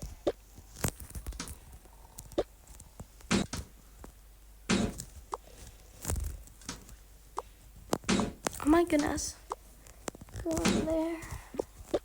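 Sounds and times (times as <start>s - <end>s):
items knocking on fridge shelves: 3.3s - 3.8s, 4.7s - 5.1s, 8.0s - 9.2s
rustling or scraping: 4.8s - 7.1s.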